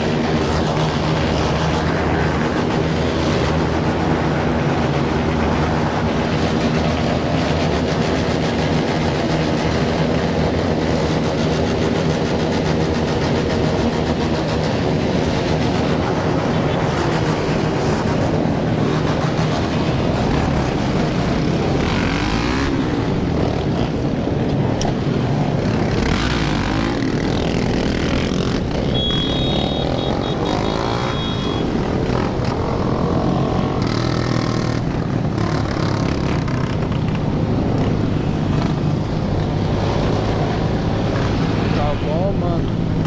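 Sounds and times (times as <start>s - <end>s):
motorcycle engines revving: 0.0s - 43.0s
high-pitched beeping: 28.9s - 31.6s.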